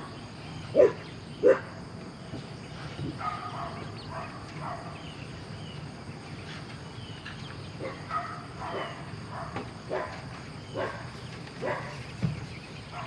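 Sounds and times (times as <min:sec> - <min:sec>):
farm animals calling: 0:03.2 - 0:05.4.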